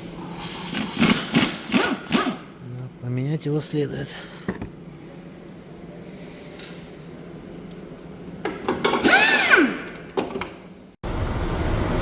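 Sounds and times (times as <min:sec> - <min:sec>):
low workshop hum: 0:00.0 - 0:12.0
power tool spinning up and down: 0:09.0 - 0:09.8.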